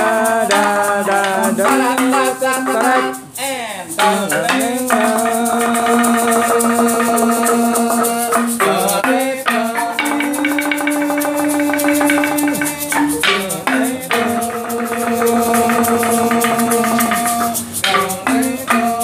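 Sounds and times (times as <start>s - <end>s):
melody with sliding pitch: 0.0s - 19.0s
rapid rattling percussion: 0.0s - 19.0s.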